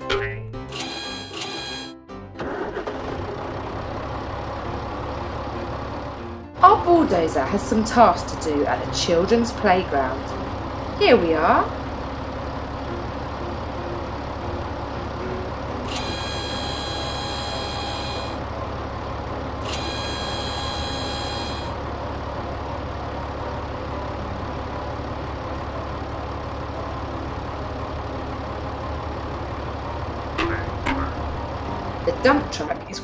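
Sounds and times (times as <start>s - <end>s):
bulldozer engine idling: 0.7s - 33.0s
long high-pitched tones: 15.9s - 18.4s, 19.7s - 21.8s.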